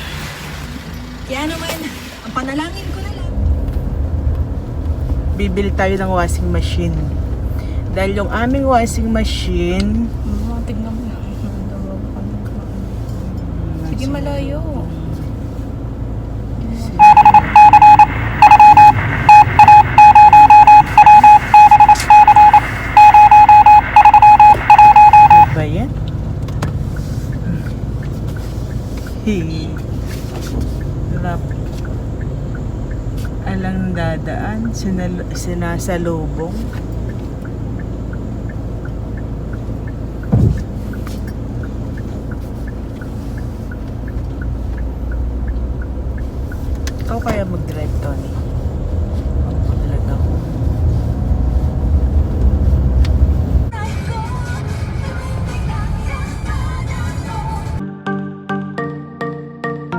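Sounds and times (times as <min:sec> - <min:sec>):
car road and engine rumble: 0:00.0 - 0:57.8
light ticking: 0:16.2 - 0:49.6
rapid electronic beeps: 0:17.0 - 0:25.6.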